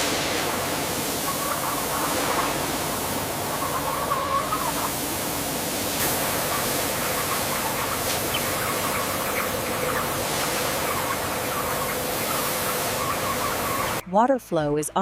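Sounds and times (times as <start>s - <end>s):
steady hiss: 0.0s - 14.0s
chickens clucking: 0.2s - 14.1s.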